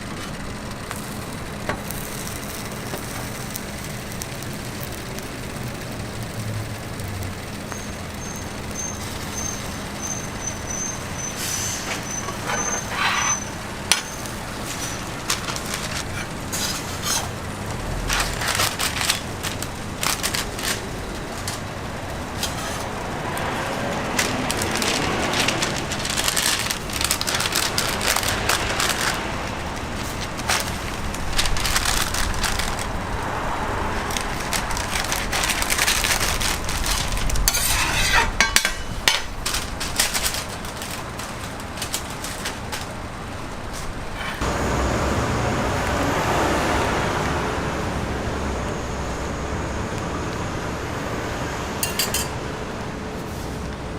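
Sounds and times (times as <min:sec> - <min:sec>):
utensils clattering and scraping: 0:07.6 - 0:33.0, 0:34.0 - 0:44.5, 0:51.8 - 0:52.4.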